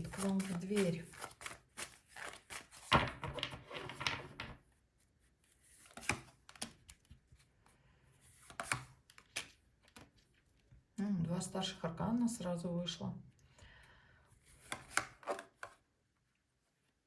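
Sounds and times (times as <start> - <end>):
cards being shuffled: 0.0 - 4.6, 5.5 - 7.2, 8.3 - 10.3, 14.5 - 15.8.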